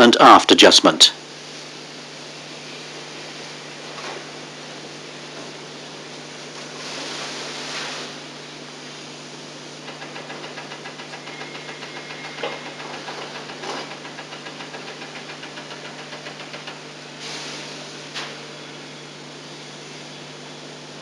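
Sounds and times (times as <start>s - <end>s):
ratchet clicking rapidly: 9.8s - 16.8s.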